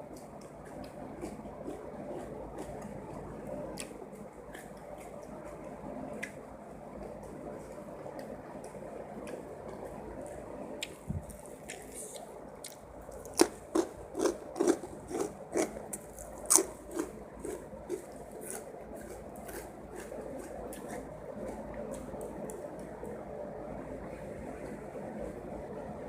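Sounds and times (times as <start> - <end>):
wet chewing: 0.1 - 5.6, 10.8 - 22.9.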